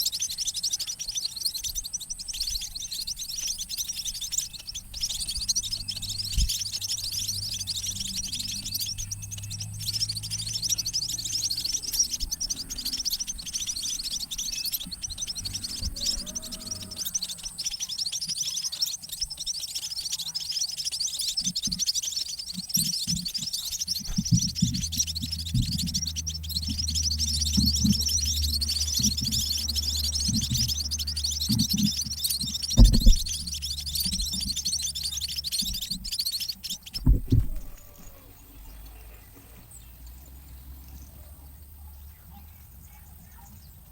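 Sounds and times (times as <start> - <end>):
chicks chirping: 0.0 - 43.9
low rumble: 4.4 - 17.6, 24.0 - 35.8
loud knocks: 32.7 - 33.4, 37.0 - 37.9.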